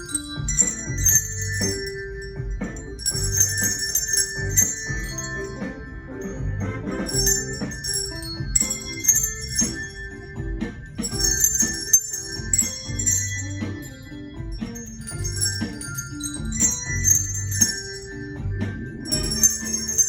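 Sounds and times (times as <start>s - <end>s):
handbells ringing a tune: 0.0s - 20.0s
jingle bells shaking: 0.0s - 20.0s.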